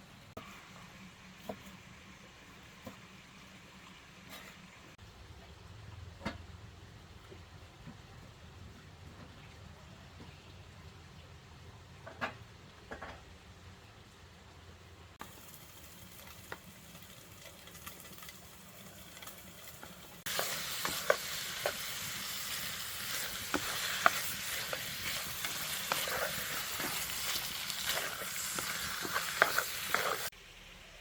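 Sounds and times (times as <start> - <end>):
food sizzling in a pan: 15.2 - 31.0
utensil clicking and scraping: 20.3 - 30.3.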